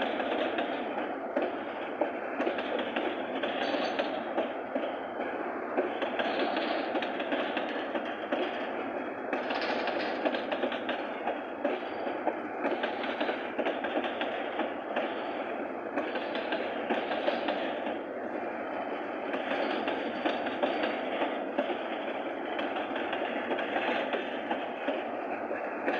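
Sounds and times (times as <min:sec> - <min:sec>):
freight train wheels clattering: 0:00.0 - 0:25.9.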